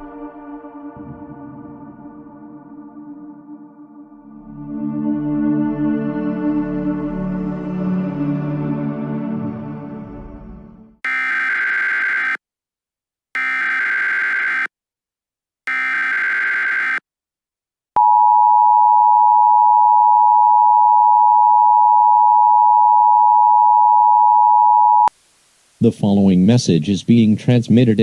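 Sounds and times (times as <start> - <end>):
rasping data bursts: 11.1 - 12.4, 13.4 - 14.7, 15.7 - 17.0.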